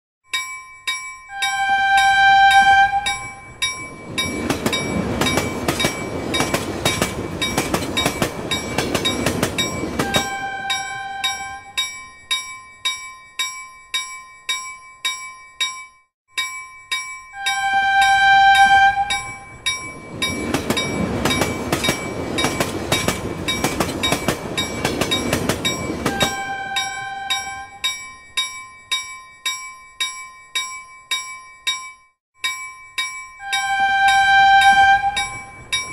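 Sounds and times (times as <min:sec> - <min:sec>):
level-crossing bell ringing: 0:00.3 - 0:35.9
train horn blast: 0:01.4 - 0:03.3, 0:10.0 - 0:11.6, 0:17.4 - 0:19.3, 0:26.1 - 0:27.8, 0:33.4 - 0:35.5
train passing with rumble: 0:01.5 - 0:11.8, 0:17.5 - 0:27.8, 0:33.4 - 0:35.9.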